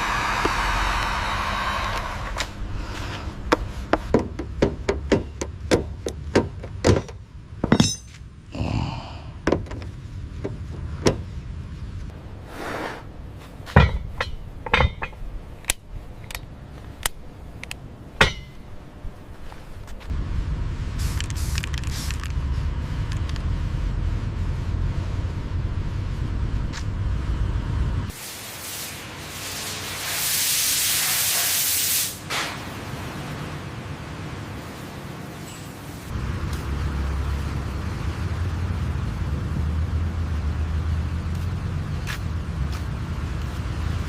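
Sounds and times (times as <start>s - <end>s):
steady low rumble: 0.0s - 28.1s.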